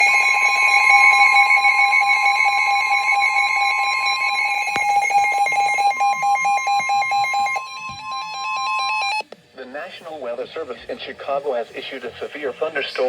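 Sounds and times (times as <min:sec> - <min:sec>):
shrill alarm tones: 0:00.0 - 0:09.2.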